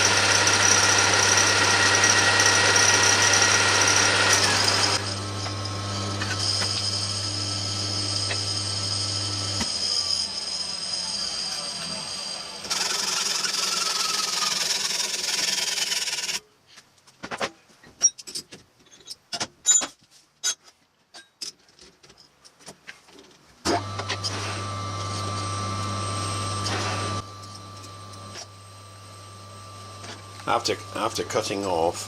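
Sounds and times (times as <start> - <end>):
lathe motor humming: 0.0 - 16.4, 23.8 - 32.0
metal lathe cutting steel: 0.0 - 16.4, 23.7 - 32.0.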